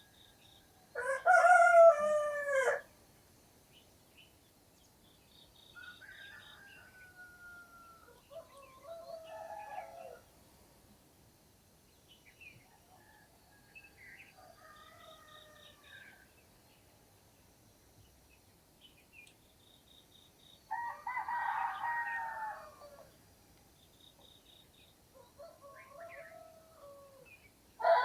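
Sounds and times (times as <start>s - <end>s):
rooster crowing: 0.9s - 2.9s, 5.8s - 10.2s, 20.7s - 23.1s, 25.3s - 27.2s, 27.8s - 28.0s
distant rooster calls: 1.0s - 2.9s, 5.8s - 10.3s, 12.8s - 16.2s, 20.7s - 23.1s, 25.2s - 28.0s.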